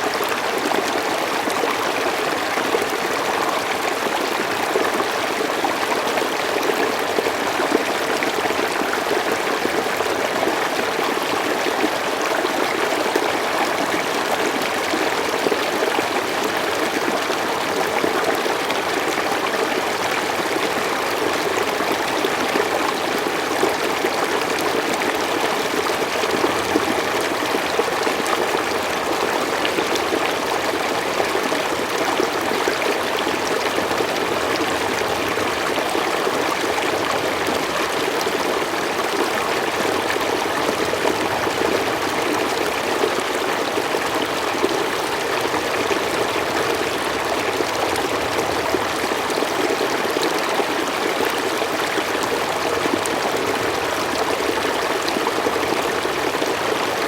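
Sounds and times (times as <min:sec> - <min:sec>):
stream flowing over stones: 0:00.0 - 0:57.0.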